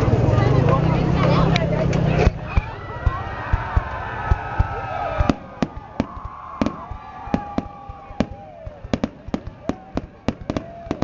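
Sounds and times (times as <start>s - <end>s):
fireworks cracking and popping: 2.3s - 11.0s.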